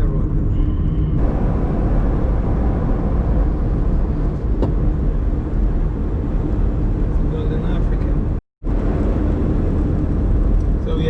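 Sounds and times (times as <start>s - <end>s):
car engine: 0.0s - 11.0s
road noise: 0.0s - 11.0s.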